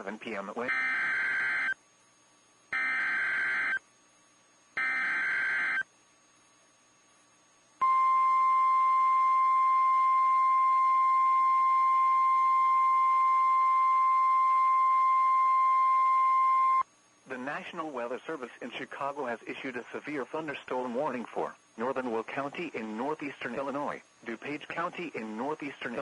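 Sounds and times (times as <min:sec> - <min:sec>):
steady warning alarm tone: 0:00.6 - 0:01.8, 0:02.7 - 0:03.8, 0:04.8 - 0:05.9, 0:07.8 - 0:16.8.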